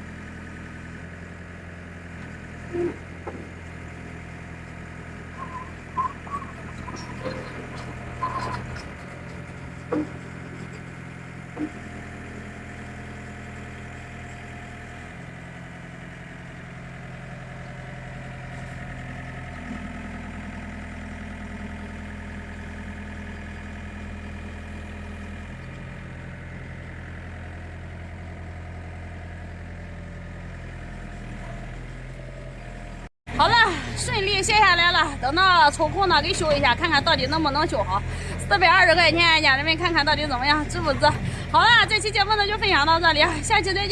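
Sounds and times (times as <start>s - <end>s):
vehicle engine running: 0.0s - 43.9s.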